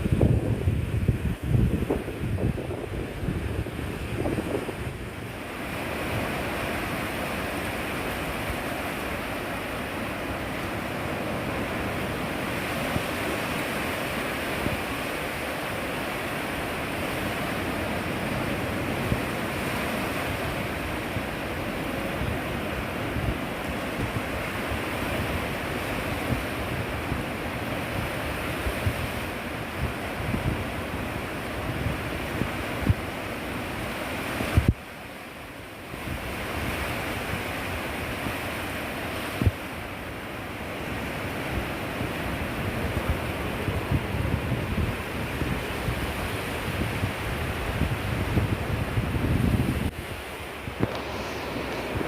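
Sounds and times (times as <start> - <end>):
wind buffeting microphone: 0.0 - 34.9, 35.8 - 52.0
sea waves washing onto beach: 0.0 - 52.0.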